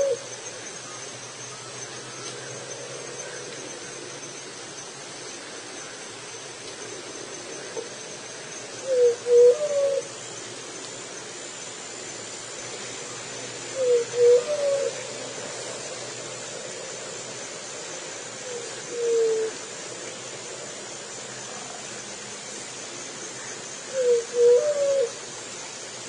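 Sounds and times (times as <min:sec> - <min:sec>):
dove cooing: 0:00.0 - 0:00.3, 0:08.8 - 0:10.1, 0:13.7 - 0:15.1, 0:18.4 - 0:19.6, 0:23.9 - 0:25.3.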